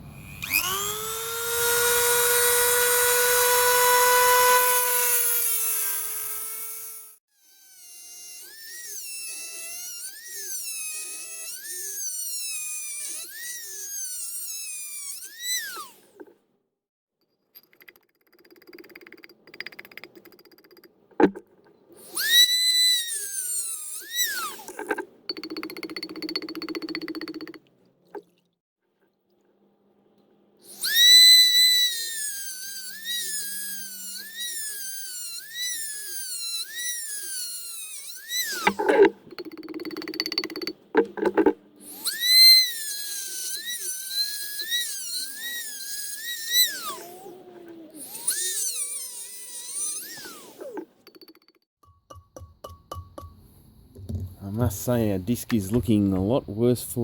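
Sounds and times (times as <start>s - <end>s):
cutter squealing on ceramic: 0.0s - 16.3s, 22.0s - 27.6s, 30.6s - 51.6s
power tool high whine: 0.0s - 16.3s, 22.0s - 27.5s, 30.6s - 51.5s
cutter rasping on ceramic: 0.4s - 16.3s, 22.0s - 27.6s, 30.6s - 53.4s.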